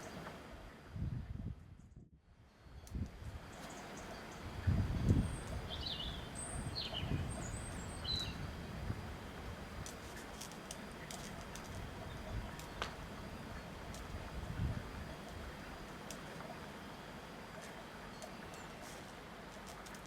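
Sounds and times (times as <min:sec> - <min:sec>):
wind gusting: 0:04.4 - 0:16.0
high bird chirps: 0:05.2 - 0:08.5.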